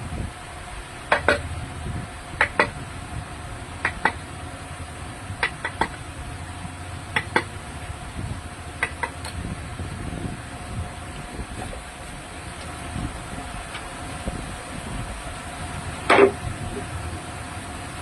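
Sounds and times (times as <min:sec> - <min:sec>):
faint steady hum: 0:00.0 - 0:18.0
hammer knocking on wood: 0:01.1 - 0:01.4.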